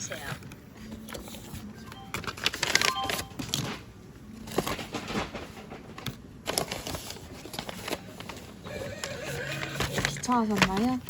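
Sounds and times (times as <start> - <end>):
packaging rustling and tapping: 1.9 - 8.6, 9.7 - 11.0.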